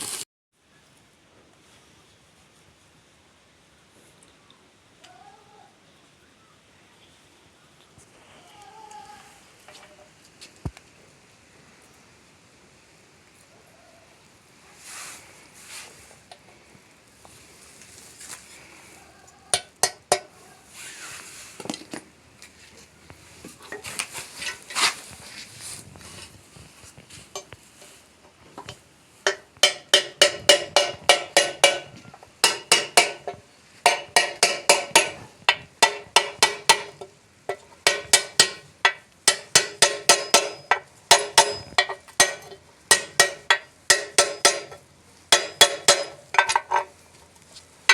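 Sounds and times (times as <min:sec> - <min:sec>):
metal parts clinking and scraping: 0:28.6 - 0:47.0
hammer striking steel: 0:29.3 - 0:46.9.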